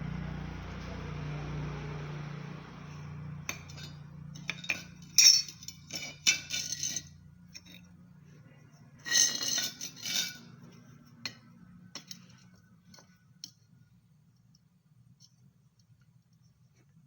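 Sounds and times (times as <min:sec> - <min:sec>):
metal clinking and scraping: 0:03.5 - 0:08.0, 0:08.7 - 0:13.6.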